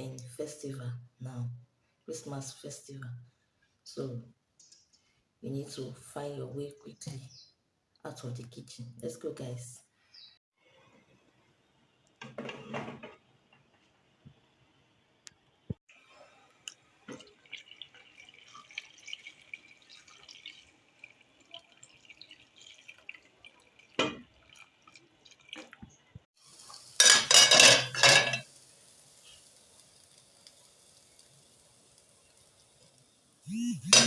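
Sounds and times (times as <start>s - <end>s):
faint steady hiss: 26.4s - 34.0s
pots and dishes clinking: 27.0s - 28.5s.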